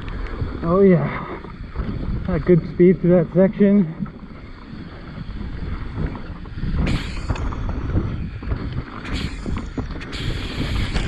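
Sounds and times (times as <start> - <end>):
bike tyres rumbling on dirt: 0.0 - 11.0
wind on microphone: 0.0 - 11.0
gravel hissing bursts: 6.6 - 8.3, 9.0 - 11.0.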